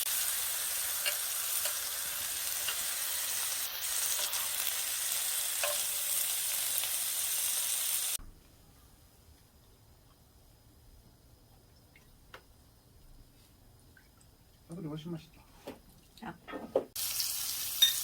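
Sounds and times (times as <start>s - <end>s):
food sizzling in a pan: 0.0s - 8.2s, 16.9s - 18.0s.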